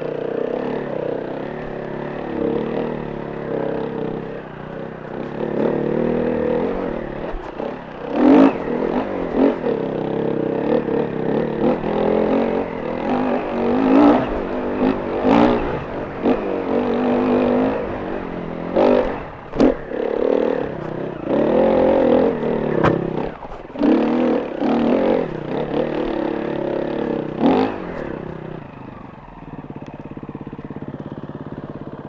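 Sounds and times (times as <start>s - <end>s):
motorcycle engine revving: 0.0s - 32.0s.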